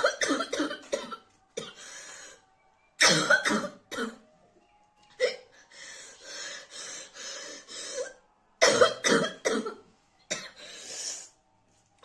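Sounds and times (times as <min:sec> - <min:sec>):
woman coughing hard: 0:00.0 - 0:01.7, 0:03.0 - 0:04.2, 0:08.6 - 0:10.6
woman panting: 0:05.7 - 0:08.1.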